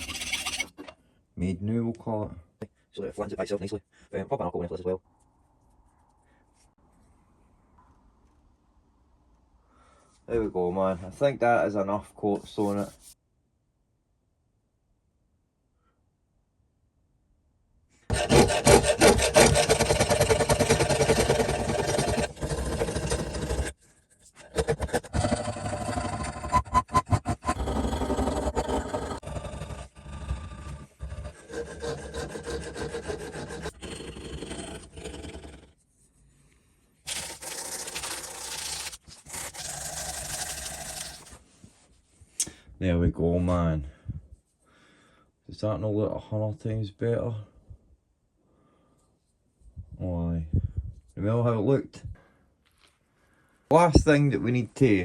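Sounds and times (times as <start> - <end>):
hand abrasive rasping on metal: 0.0 - 0.7, 18.1 - 35.8, 37.1 - 41.3.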